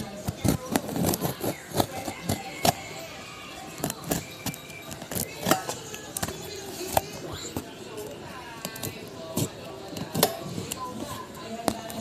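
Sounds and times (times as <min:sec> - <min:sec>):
hard objects clicking and rattling: 0:00.0 - 0:07.7.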